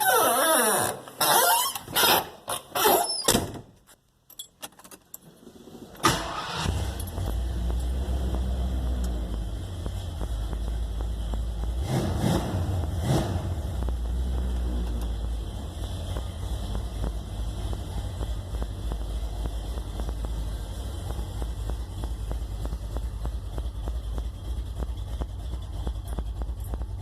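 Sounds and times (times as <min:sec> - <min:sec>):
keys jingling: 0:04.2 - 0:05.3
car engine idling: 0:05.6 - 0:27.0.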